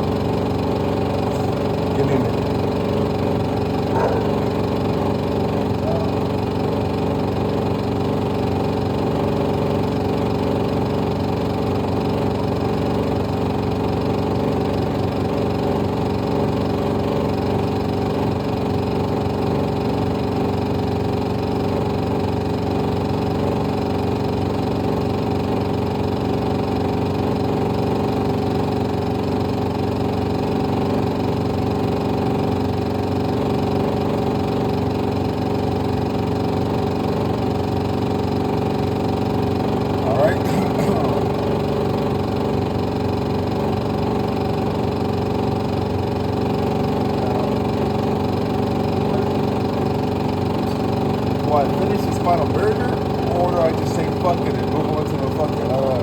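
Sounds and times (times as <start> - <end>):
motor humming: 0.0 - 17.9, 31.9 - 56.0.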